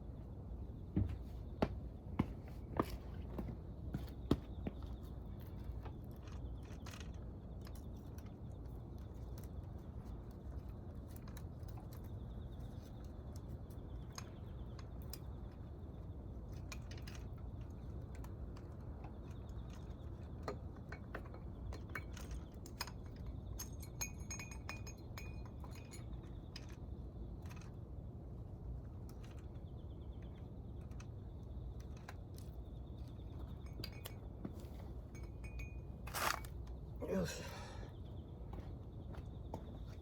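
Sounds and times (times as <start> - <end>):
steady low hum: 0.0 - 40.0
small jingling clinks: 21.9 - 26.8, 35.0 - 36.6.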